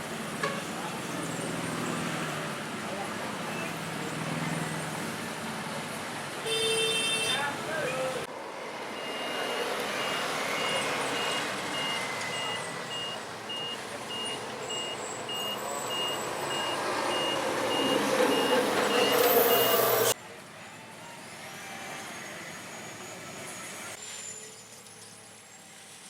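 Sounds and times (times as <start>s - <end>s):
diesel engine: 0.0s - 6.4s, 7.5s - 26.0s
reversing alarm beeps: 8.9s - 20.2s.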